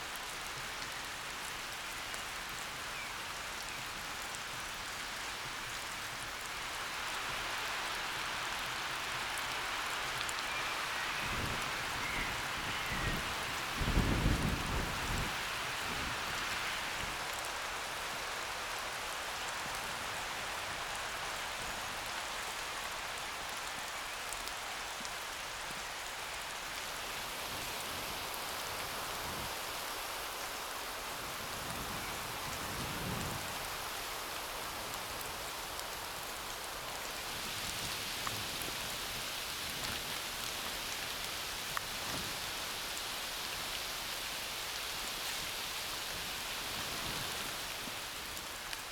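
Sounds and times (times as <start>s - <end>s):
steady rain falling: 0.0s - 48.9s.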